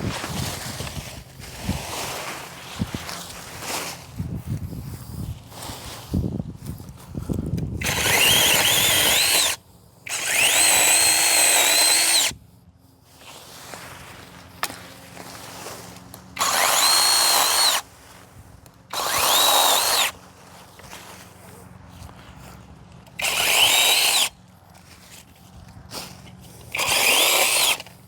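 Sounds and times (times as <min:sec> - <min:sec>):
mini chainsaw cutting branches: 0:05.6 - 0:12.4, 0:13.2 - 0:28.0.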